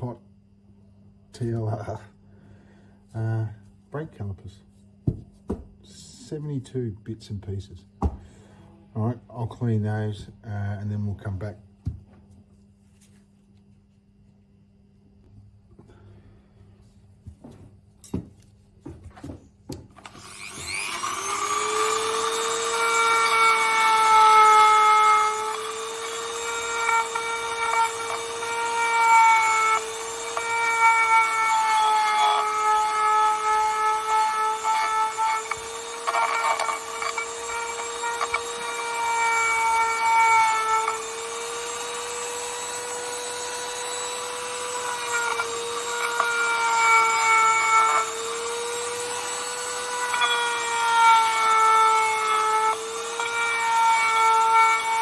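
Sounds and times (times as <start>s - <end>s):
power tool whine: 20.0s - 55.0s.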